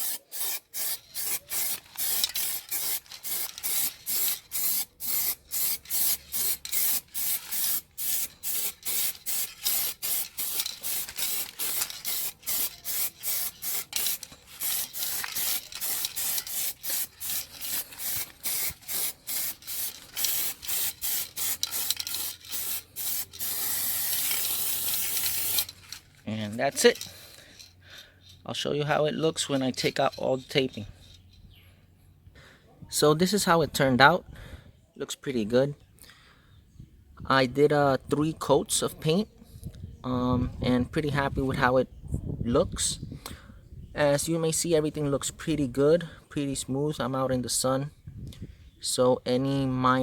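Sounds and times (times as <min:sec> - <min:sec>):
spray-paint can hissing: 0:00.0 - 0:25.8.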